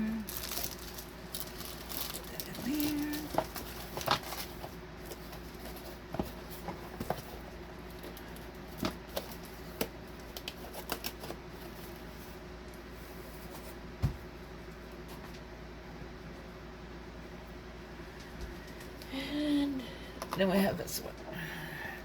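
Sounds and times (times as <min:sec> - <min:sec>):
packaging rustling and clicking: 0:00.3 - 0:12.0.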